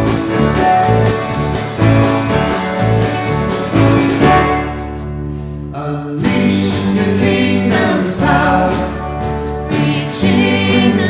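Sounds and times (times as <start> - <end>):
worship band playing: 0.0 - 5.1, 6.2 - 11.0
held low chord: 0.0 - 7.0
guitar: 0.0 - 11.0.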